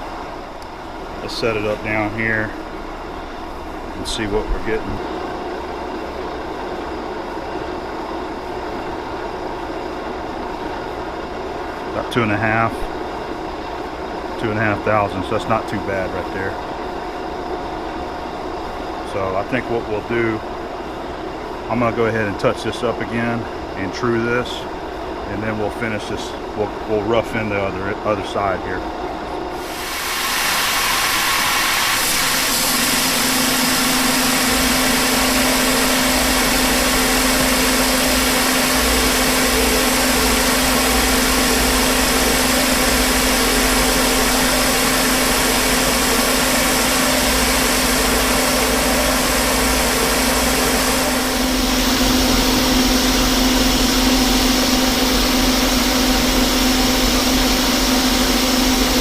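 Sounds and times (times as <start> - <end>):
lathe running: 29.6 - 59.0.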